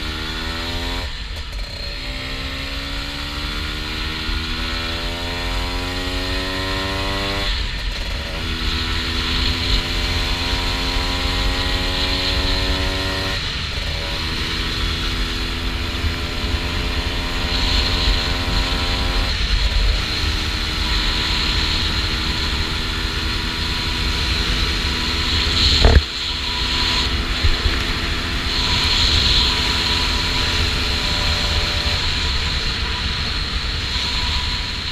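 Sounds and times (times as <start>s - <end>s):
motorcycle engine accelerating: 0.0s - 34.9s
wind on microphone: 6.6s - 34.9s
sharp loud thump: 25.6s - 26.2s.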